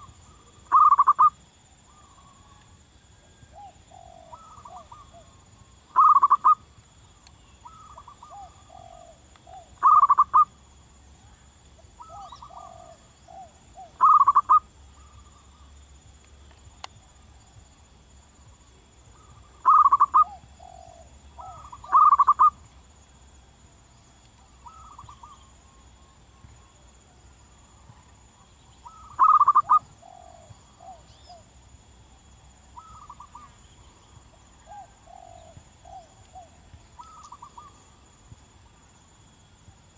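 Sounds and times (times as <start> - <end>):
dove cooing loudly: 0.7 - 1.3, 3.6 - 5.3, 6.0 - 6.6, 7.6 - 10.5, 12.0 - 14.6, 19.6 - 22.6, 28.8 - 31.0, 34.6 - 37.8.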